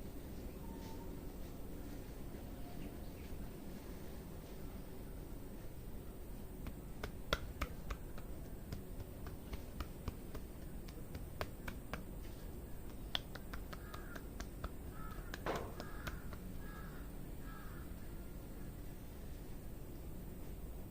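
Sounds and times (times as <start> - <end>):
hair cracking snaps: 13.0 - 16.5
bird calling: 13.7 - 18.2.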